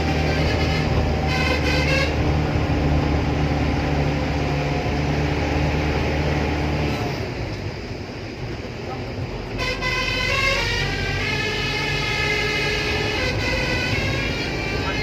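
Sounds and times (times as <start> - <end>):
musical lorry horn: 0.0 - 3.2, 9.5 - 15.0
vehicle engine drone: 0.0 - 15.0.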